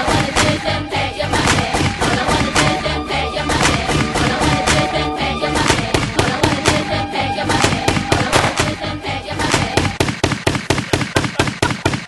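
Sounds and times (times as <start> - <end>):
music with steady beat: 0.0 - 12.0
rapid sharp gunshots: 7.5 - 8.8, 9.5 - 12.0.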